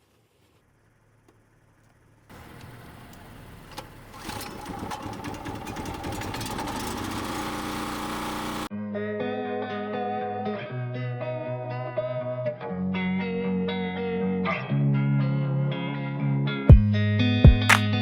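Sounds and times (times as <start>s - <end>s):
chainsaw engine running: 2.3s - 8.7s.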